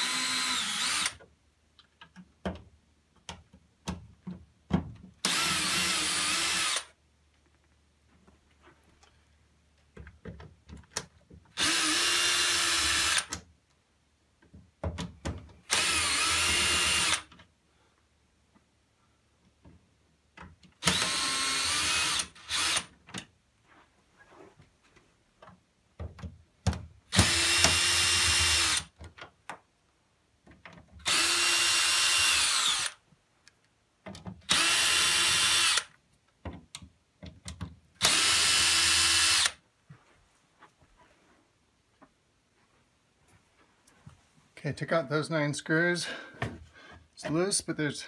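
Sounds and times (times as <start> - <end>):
power drill motor running: 0.0 - 1.2, 5.2 - 6.9, 11.6 - 13.3, 15.7 - 17.3, 20.8 - 22.9, 27.1 - 28.9, 31.1 - 33.0, 34.5 - 35.9, 38.0 - 39.6
handling knocks and clicks: 9.7 - 11.5.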